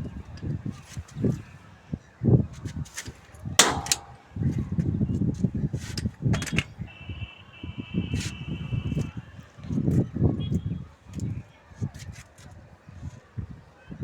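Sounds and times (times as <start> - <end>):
ringing metal clang: 3.6 - 4.4
sharp metallic knocks: 3.6 - 4.4.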